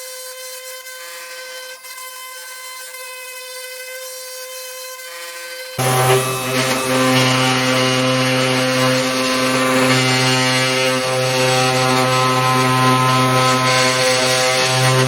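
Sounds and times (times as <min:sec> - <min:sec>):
low hum: 0:05.8 - 0:15.0
rough cutting noise: 0:05.8 - 0:15.0
router spindle whine: 0:05.8 - 0:15.0.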